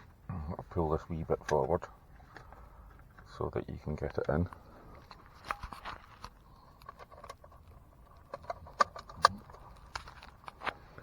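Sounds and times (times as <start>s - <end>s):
camera parts clicking: 5.1s - 10.8s.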